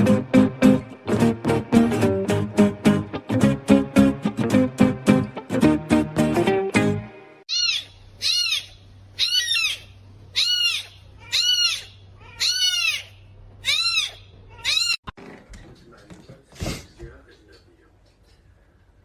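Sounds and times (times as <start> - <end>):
guitar music: 0.0 - 7.4
cat meowing: 7.5 - 15.1.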